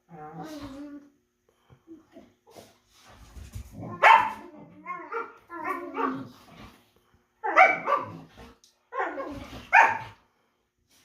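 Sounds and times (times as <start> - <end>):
dogs barking and yipping: 3.9 - 6.3, 7.4 - 8.3, 9.0 - 10.2.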